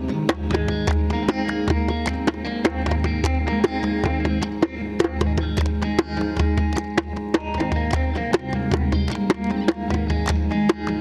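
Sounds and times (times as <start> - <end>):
plucked guitars: 0.0 - 11.0
sharp percussive hits: 0.0 - 11.0
steady bass line: 0.0 - 11.0.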